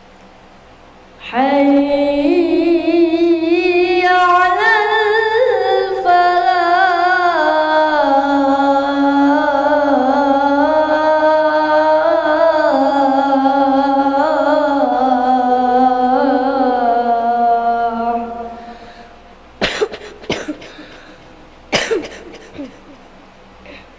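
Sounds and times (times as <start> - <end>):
boy chanting call to prayer: 1.2 - 19.2.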